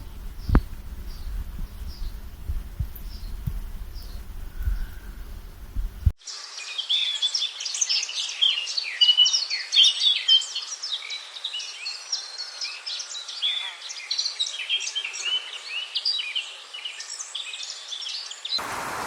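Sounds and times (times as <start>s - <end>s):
low muffled thudding: 0.0s - 6.1s
chorus of small birds: 0.0s - 19.0s.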